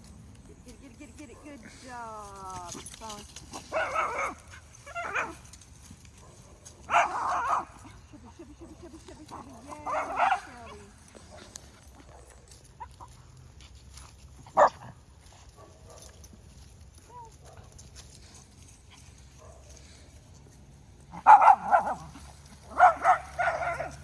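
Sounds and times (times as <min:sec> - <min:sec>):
dog barking: 0:03.7 - 0:04.4, 0:06.9 - 0:07.7, 0:09.9 - 0:10.5, 0:14.6 - 0:14.9, 0:21.2 - 0:22.1, 0:22.7 - 0:24.0.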